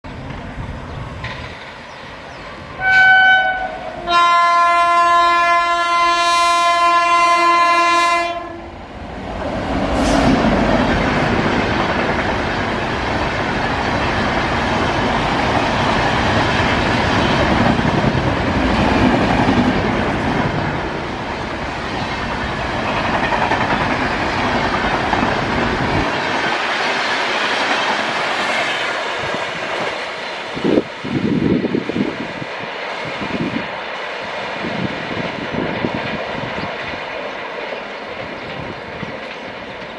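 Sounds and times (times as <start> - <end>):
train rushing past: 0.1 - 39.9
train horn blasts: 2.8 - 8.8.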